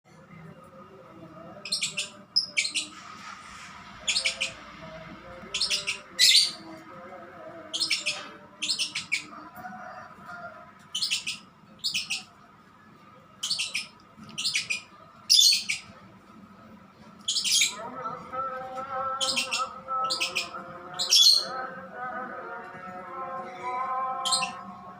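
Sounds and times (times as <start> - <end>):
lovebird chirping: 4.0 - 4.6, 5.5 - 6.6.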